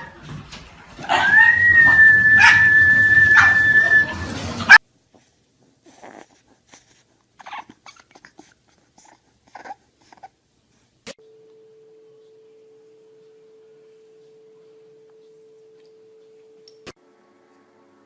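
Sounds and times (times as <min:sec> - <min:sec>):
background noise: 0:00.0 - 0:18.0
dog whining: 0:01.0 - 0:04.8, 0:05.9 - 0:06.8, 0:07.4 - 0:10.4
low steady tone: 0:11.2 - 0:16.9.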